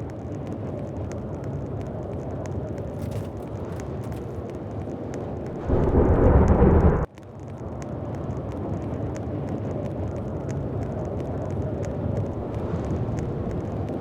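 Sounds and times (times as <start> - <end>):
faint scattered ticks: 0.0 - 5.7, 7.1 - 14.0
steady rumbling noise: 0.0 - 14.0
loud rush: 5.6 - 7.1.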